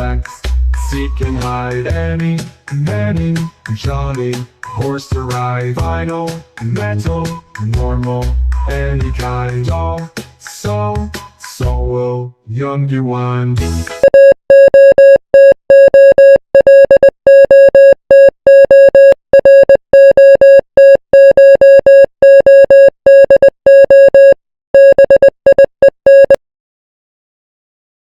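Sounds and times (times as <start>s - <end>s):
morse code beeps: 14.0s - 26.4s.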